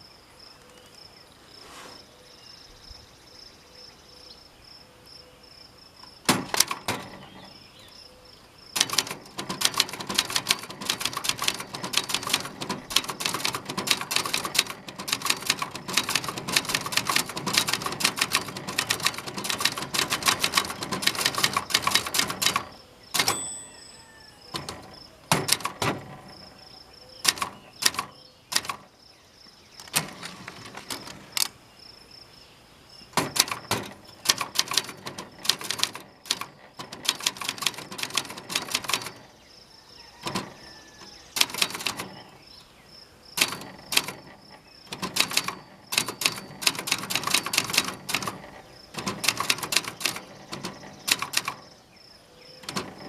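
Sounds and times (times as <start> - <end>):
typewriter type-bar strikes: 6.2 - 7.6, 8.8 - 23.8, 24.5 - 26.6, 27.2 - 28.9, 29.8 - 31.5, 33.2 - 39.3, 40.2 - 42.4, 43.4 - 51.8, 52.6 - 53.0
metal table rattling: 6.3 - 7.6, 8.8 - 23.8, 24.4 - 28.9, 29.8 - 31.6, 33.2 - 39.4, 40.2 - 40.7, 41.4 - 42.4, 43.4 - 51.8, 52.6 - 53.0.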